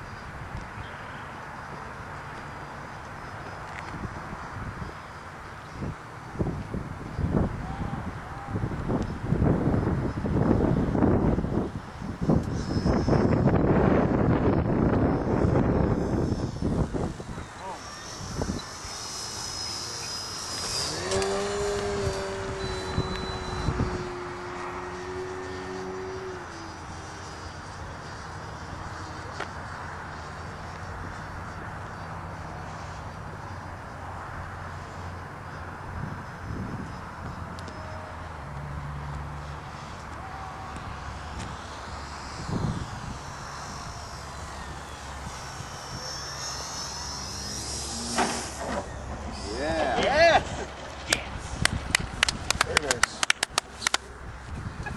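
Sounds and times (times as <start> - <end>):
model plane engine drone: 0.0 - 54.9
wind buffeting microphone: 5.7 - 19.5, 20.3 - 26.5, 35.8 - 37.6, 39.5 - 46.1, 48.5 - 54.9.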